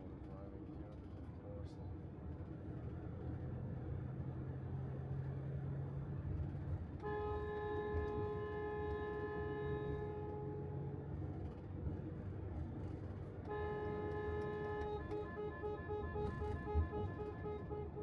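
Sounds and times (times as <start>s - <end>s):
bus engine running: 0.3s - 18.0s
vehicle horn blast: 13.5s - 18.0s.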